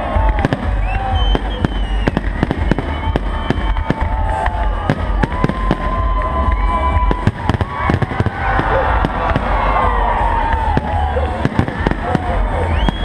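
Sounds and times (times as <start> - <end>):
crowd voices: 0.0 - 13.0
firework bangs and crackles: 0.0 - 13.0
firework whistles: 0.4 - 5.8, 10.7 - 13.0.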